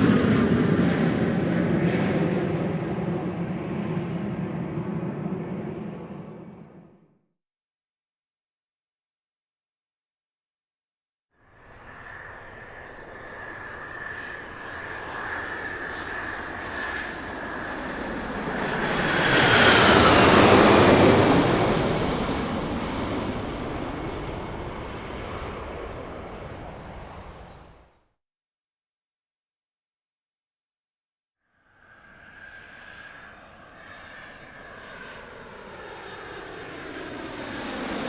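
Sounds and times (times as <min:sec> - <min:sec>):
jet aircraft flying past: 0:00.0 - 0:07.0, 0:11.6 - 0:27.9, 0:31.8 - 0:38.0.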